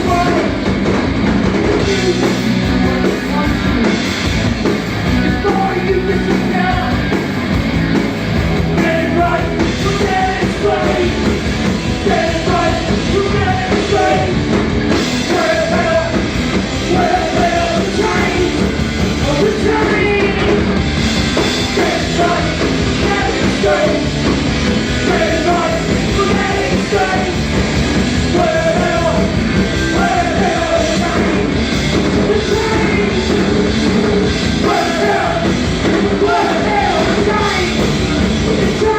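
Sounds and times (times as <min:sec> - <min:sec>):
rock band playing live: 0:00.0 - 0:38.9
person singing: 0:05.2 - 0:07.2, 0:08.7 - 0:11.3, 0:15.2 - 0:20.7, 0:21.7 - 0:24.2, 0:25.0 - 0:27.5, 0:28.3 - 0:33.6, 0:34.6 - 0:38.9.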